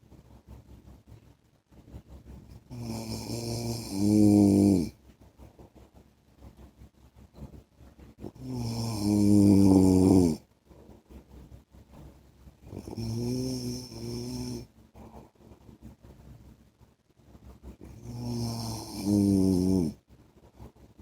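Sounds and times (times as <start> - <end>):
man snoring: 2.7 - 5.0, 8.3 - 10.4, 12.7 - 14.7, 17.8 - 20.0.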